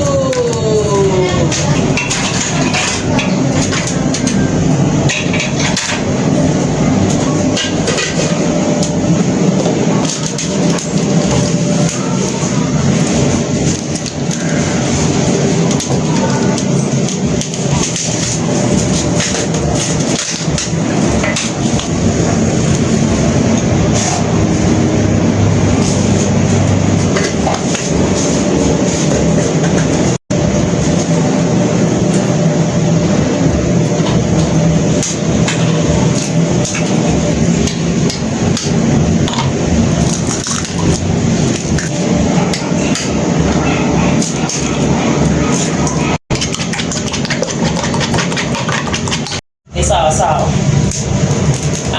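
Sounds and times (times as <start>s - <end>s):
steady background hum: 0.0s - 51.9s
sharp knocks of kitchen work: 1.4s - 6.4s, 7.0s - 8.5s, 46.3s - 49.4s.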